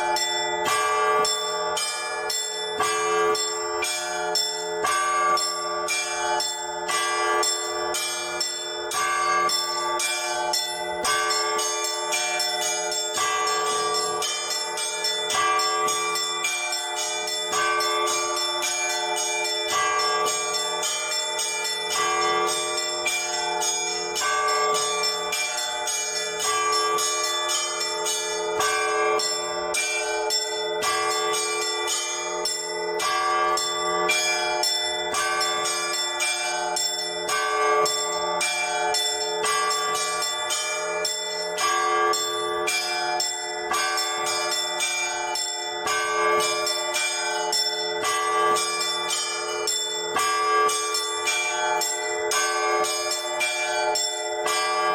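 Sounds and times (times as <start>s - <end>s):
church bells rung rhythmically: 0.0s - 54.9s
continuous low bell tone: 0.0s - 54.9s.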